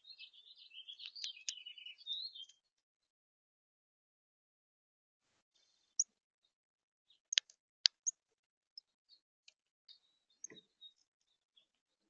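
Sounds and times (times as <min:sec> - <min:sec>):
small birds chirping: 0:00.0 - 0:02.8, 0:05.5 - 0:08.2, 0:08.8 - 0:12.0.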